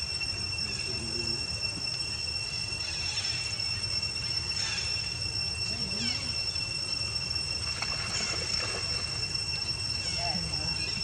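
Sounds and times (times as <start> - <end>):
high-pitched drone: 0.0 - 11.0.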